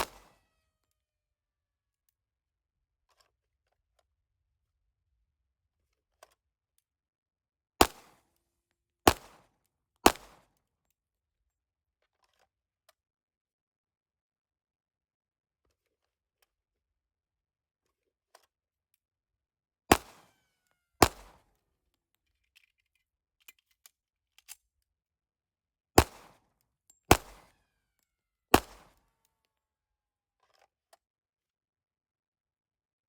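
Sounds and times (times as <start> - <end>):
pistol shots: 0.0 - 0.4, 9.1 - 9.4, 10.1 - 10.4, 19.9 - 20.3, 21.0 - 21.4, 26.0 - 26.4, 27.1 - 27.6, 28.6 - 29.0.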